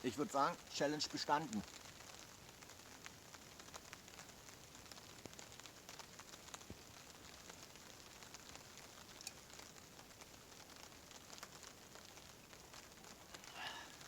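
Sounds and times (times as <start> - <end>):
wood fire crackling: 0.0 - 14.0.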